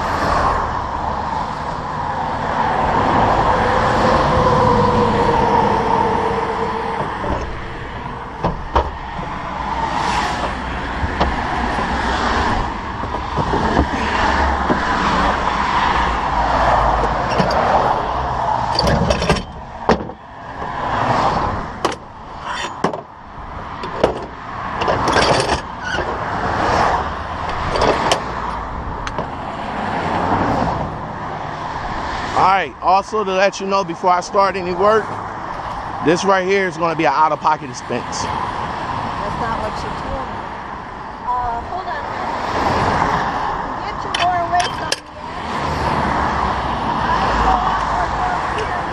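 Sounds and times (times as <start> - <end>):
highway traffic passing: 0.0 - 48.9
vehicle whine: 0.0 - 48.9
sharp knocks and clicks: 10.4 - 11.9, 21.8 - 22.1, 23.8 - 26.2, 27.4 - 29.3.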